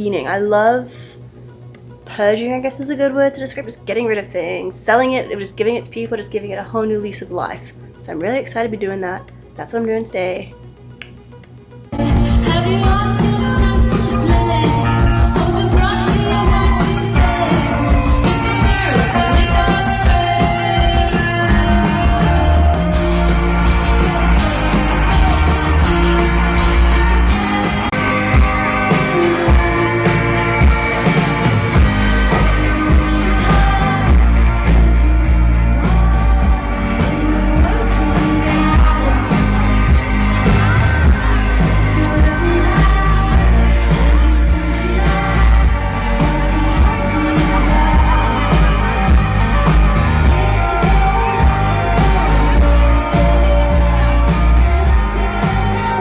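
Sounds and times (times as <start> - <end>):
pop-rock song with vocals: 12.0 - 56.0.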